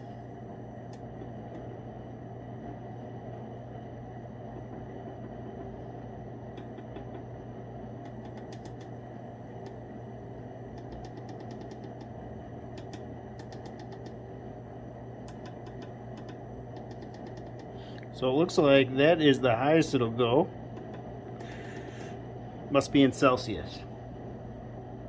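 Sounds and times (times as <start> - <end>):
steady low hum: 0.0 - 25.0.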